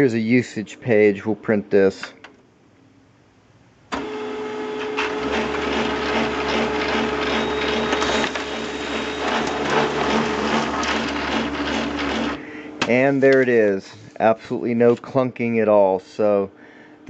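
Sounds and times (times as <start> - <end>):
laser printer printing: 4.0 - 12.4.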